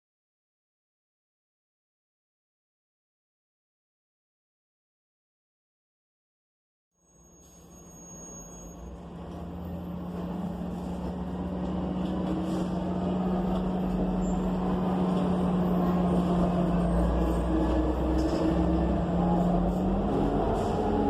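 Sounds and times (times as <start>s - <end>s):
bus engine drone: 7.1s - 21.0s.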